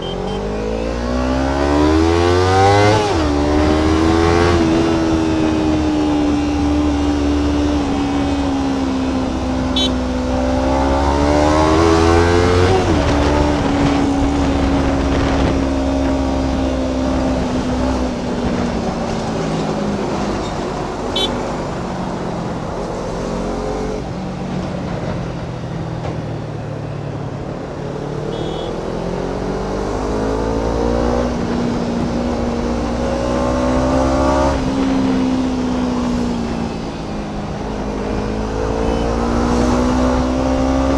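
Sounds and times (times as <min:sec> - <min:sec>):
motorcycle engine accelerating: 0:00.0 - 0:25.8, 0:26.4 - 0:40.9.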